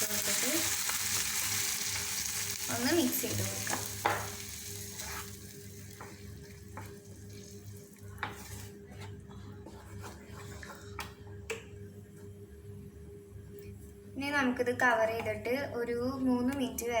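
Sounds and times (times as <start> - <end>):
faint sizzle in a pan: 0.0 - 8.7
steady low hum: 2.7 - 17.0
spoon scraping a pan: 4.9 - 5.5, 8.2 - 10.7.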